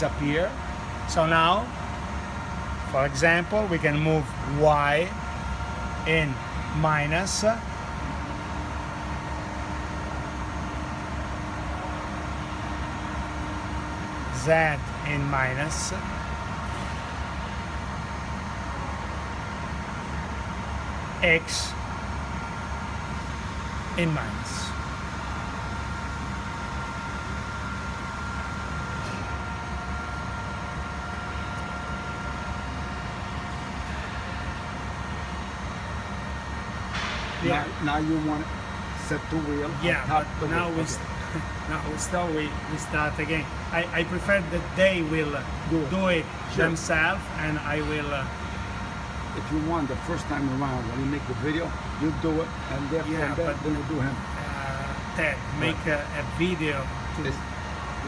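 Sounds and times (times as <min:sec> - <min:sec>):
machine drive whine: 0:00.0 - 0:58.0
machine hum: 0:03.8 - 0:58.0
grinder machine hum: 0:07.6 - 0:15.0, 0:23.0 - 0:31.4.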